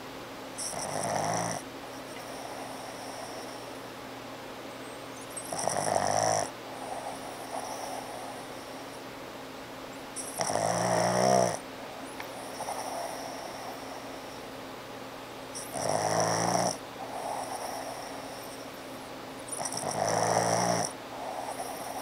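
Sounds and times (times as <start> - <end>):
dog snoring: 0.6 - 3.8, 5.2 - 9.0, 10.2 - 11.6, 12.2 - 14.5, 15.6 - 18.8, 19.5 - 22.0
dog breathing: 0.6 - 3.9, 5.2 - 9.1, 10.2 - 14.5, 15.6 - 22.0.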